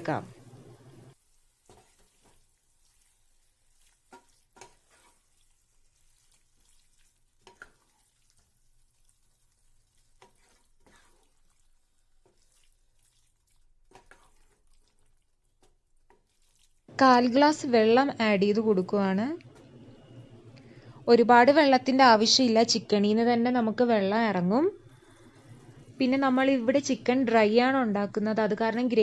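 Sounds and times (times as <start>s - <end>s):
quiet sizzle: 0.0s - 29.0s
spoon scraping a pan: 1.1s - 18.9s.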